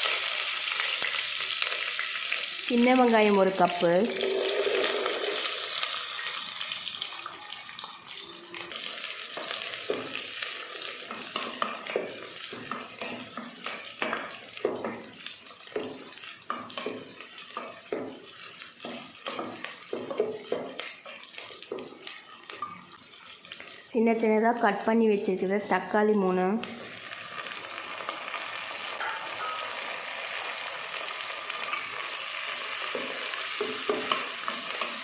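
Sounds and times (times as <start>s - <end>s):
onions sizzling in oil: 0.0s - 35.0s
utensil scraping pan: 4.1s - 5.8s.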